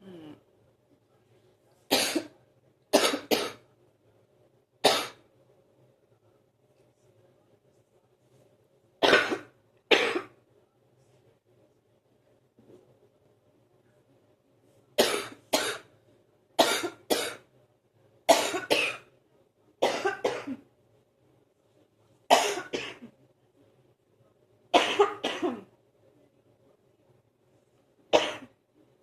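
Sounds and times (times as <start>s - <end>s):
person coughing up phlegm: 1.9s - 3.6s, 4.8s - 5.2s, 9.0s - 10.4s, 15.0s - 15.9s, 16.6s - 17.4s, 18.3s - 19.1s, 19.8s - 20.6s, 22.3s - 23.1s, 24.8s - 25.7s, 28.1s - 28.6s.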